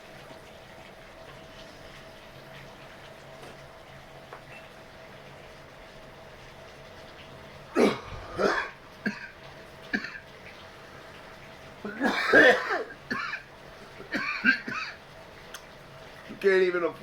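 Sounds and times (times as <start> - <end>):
man coughing: 7.7 - 9.3, 11.9 - 13.4, 14.1 - 15.0.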